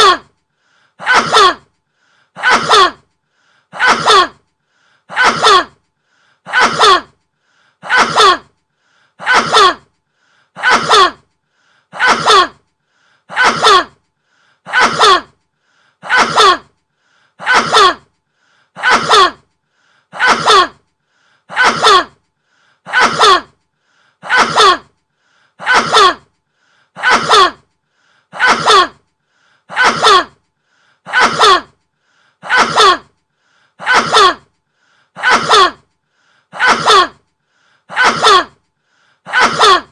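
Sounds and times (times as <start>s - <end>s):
man sneezing: 0.0s - 0.3s, 1.0s - 1.6s, 2.4s - 3.0s, 3.8s - 4.4s, 5.1s - 5.7s, 6.5s - 7.1s, 7.8s - 8.5s, 9.2s - 9.8s, 10.6s - 11.2s, 12.0s - 12.6s, 13.3s - 13.9s, 14.7s - 15.3s, 16.0s - 16.7s, 17.4s - 18.0s, 18.8s - 19.4s, 20.2s - 20.8s, 21.5s - 22.1s, 22.9s - 23.5s, 24.2s - 24.9s, 25.6s - 26.2s, 27.0s - 27.6s, 28.4s - 29.0s, 29.7s - 30.3s, 31.1s - 31.7s, 32.4s - 33.1s, 33.8s - 34.4s, 35.2s - 35.8s, 36.6s - 37.2s, 37.9s - 38.5s, 39.3s - 39.9s.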